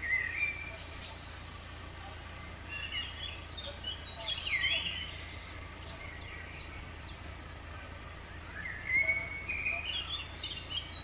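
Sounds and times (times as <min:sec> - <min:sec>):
birds chirping: 0:00.0 - 0:11.0.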